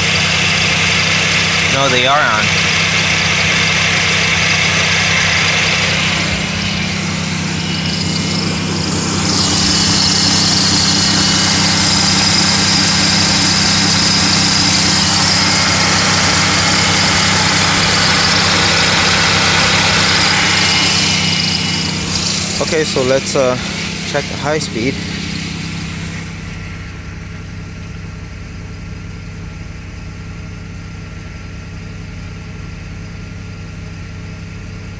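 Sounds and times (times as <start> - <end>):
radiator cooling fans rushing: 0.0 - 27.8
car engine idling: 0.0 - 34.9.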